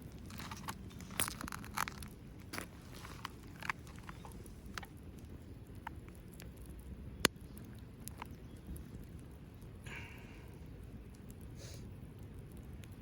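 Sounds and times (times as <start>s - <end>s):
fire rumbling: 0.0s - 13.0s
wood fire crackling: 0.0s - 13.0s
sharp snap of fire: 7.2s - 8.4s.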